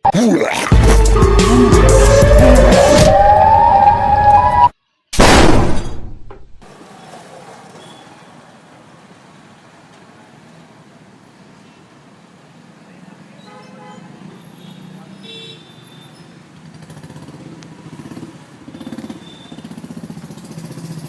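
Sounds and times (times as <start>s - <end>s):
siren-like wail: 0.7s - 4.8s
loud crash: 5.2s - 6.2s.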